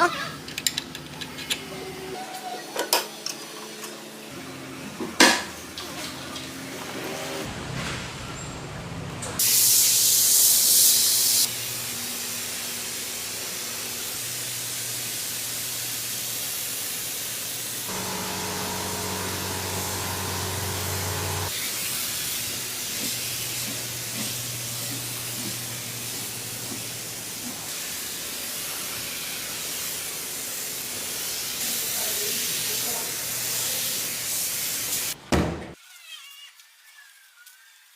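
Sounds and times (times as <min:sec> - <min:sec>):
loud high hiss: 0:17.8 - 0:22.3.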